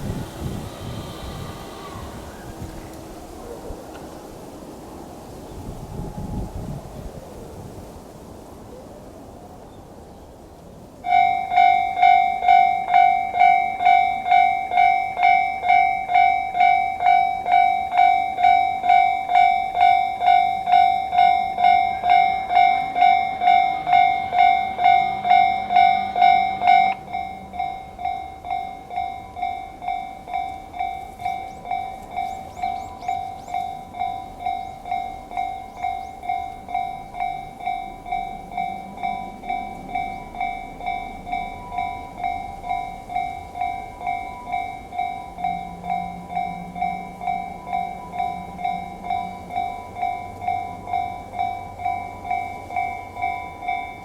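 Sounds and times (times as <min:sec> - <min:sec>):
level crossing warning bell: 0:11.0 - 0:54.0.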